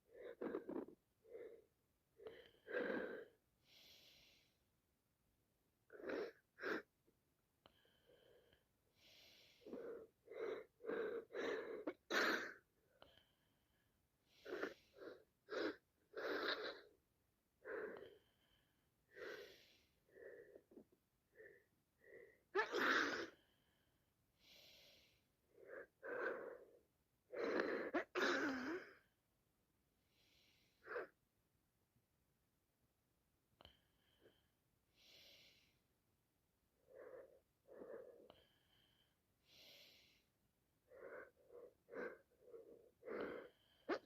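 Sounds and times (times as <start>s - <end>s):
woman sniffing congested nose: 14.4s - 16.9s.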